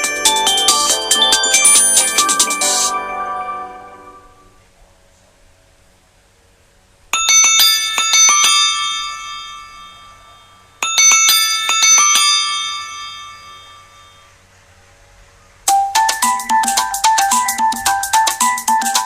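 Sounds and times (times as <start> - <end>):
smartphone ringtone chime: 0.0 - 4.5, 7.2 - 14.3, 15.7 - 19.0.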